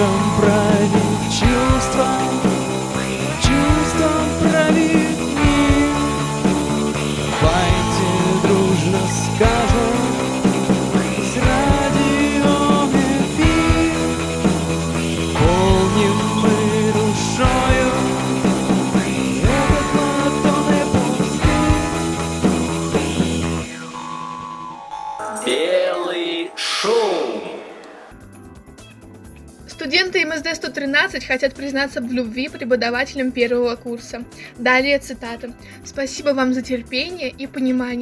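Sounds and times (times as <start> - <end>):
rock song with drums and bass: 0.0 - 23.9.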